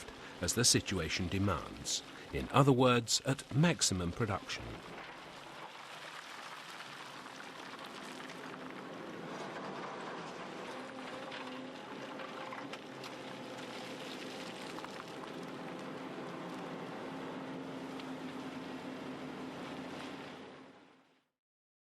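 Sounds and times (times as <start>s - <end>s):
excavator engine hum: 0.0s - 5.5s, 7.6s - 20.7s.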